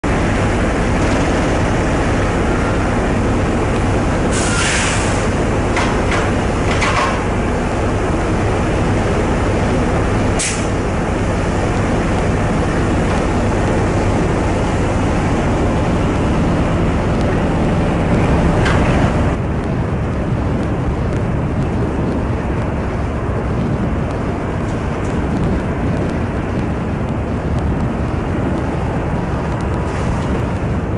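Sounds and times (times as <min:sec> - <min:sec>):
low engine hum: 0:00.0 - 0:30.9
ship rumbling through sea: 0:00.0 - 0:30.9
short hissing bursts: 0:04.3 - 0:05.3, 0:10.4 - 0:10.8.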